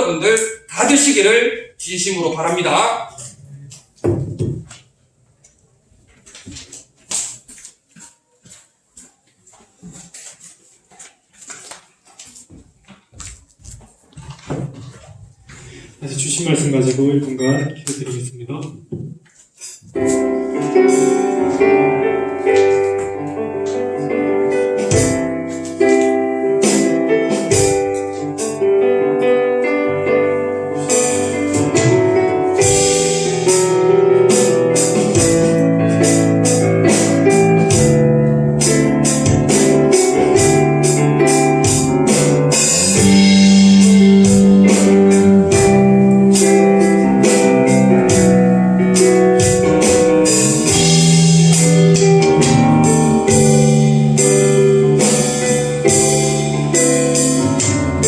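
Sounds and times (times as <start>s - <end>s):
slow worship music on keyboard: 20.0s - 58.0s.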